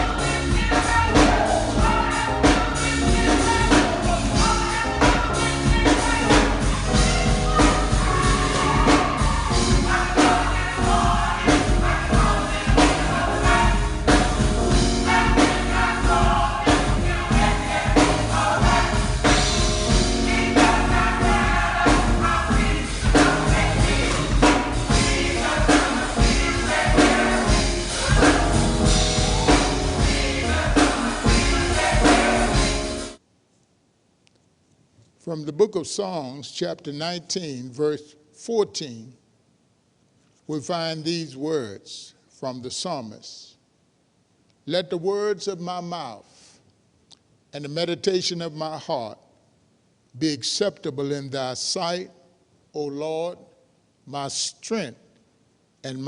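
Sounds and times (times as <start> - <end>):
steady drum beat: 0.0 - 33.0
gospel choir singing with band: 0.0 - 33.2.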